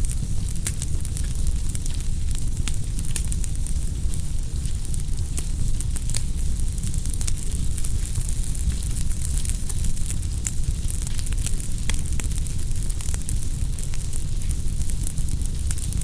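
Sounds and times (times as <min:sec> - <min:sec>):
wood fire crackling and popping: 0:00.0 - 0:16.0.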